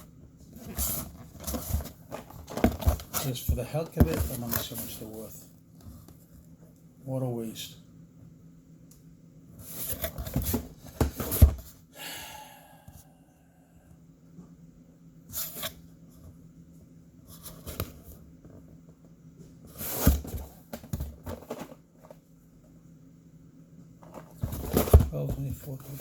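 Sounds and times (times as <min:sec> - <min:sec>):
packaging rustling and knocking: 0:00.6 - 0:05.1, 0:09.7 - 0:11.7, 0:19.7 - 0:22.2, 0:24.0 - 0:26.0.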